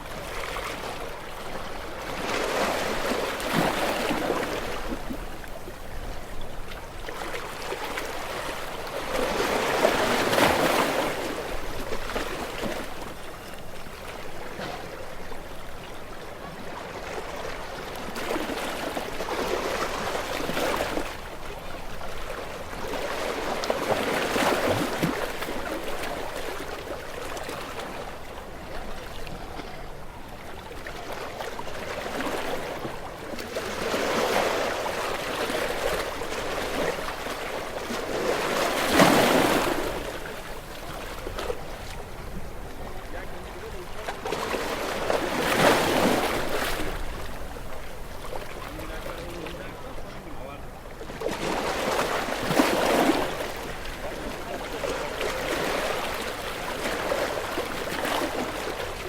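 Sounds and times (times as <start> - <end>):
waves washing against rocks: 31.8 - 59.0.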